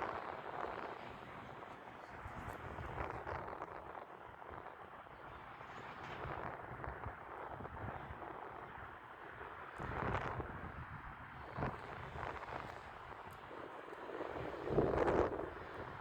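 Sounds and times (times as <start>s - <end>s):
wind buffeting microphone: 9.8s - 16.0s.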